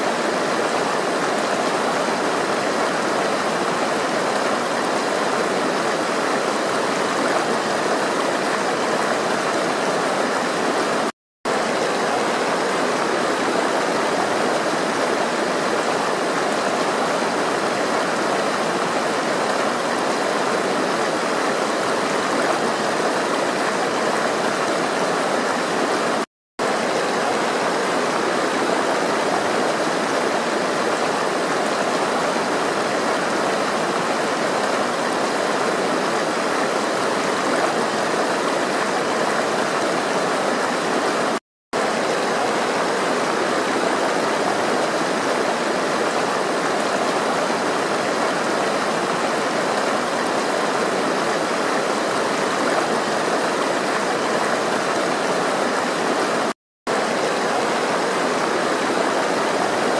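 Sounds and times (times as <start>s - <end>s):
rushing flowing water: 0.0s - 59.9s.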